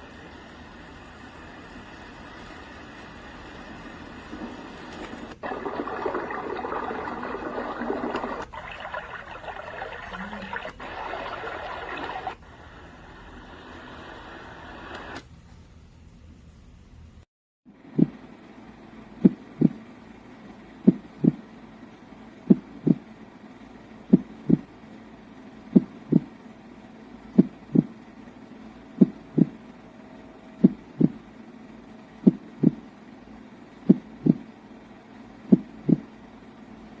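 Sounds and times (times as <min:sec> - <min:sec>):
heartbeat thumps from a speaker: 0:17.8 - 0:18.3, 0:19.2 - 0:19.9, 0:20.8 - 0:21.5, 0:22.5 - 0:23.1, 0:24.1 - 0:24.7, 0:25.7 - 0:26.4, 0:27.3 - 0:28.0, 0:29.0 - 0:29.7, 0:30.6 - 0:31.3, 0:32.2 - 0:32.9, 0:33.8 - 0:34.6, 0:35.5 - 0:36.1.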